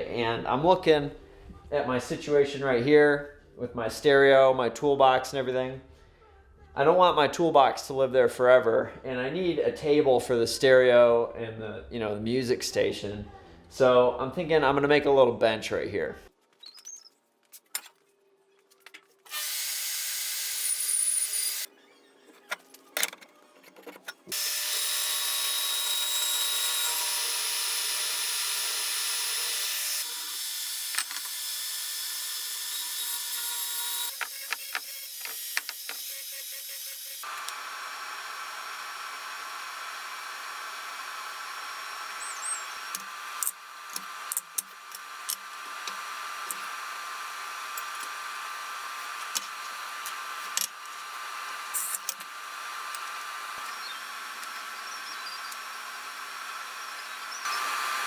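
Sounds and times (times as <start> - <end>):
power tools working wood: 19.3 - 21.7, 24.2 - 58.0.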